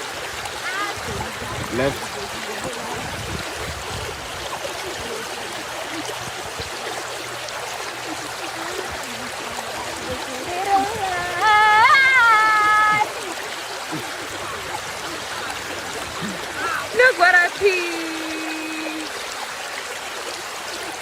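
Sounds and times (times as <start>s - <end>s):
river water rushing: 0.0s - 21.0s
person calling out: 10.5s - 13.1s.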